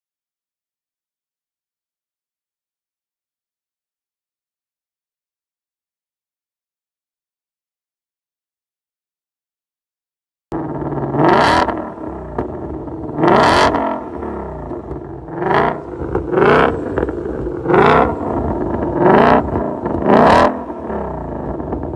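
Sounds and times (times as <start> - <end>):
car engine revving: 10.5 - 21.9.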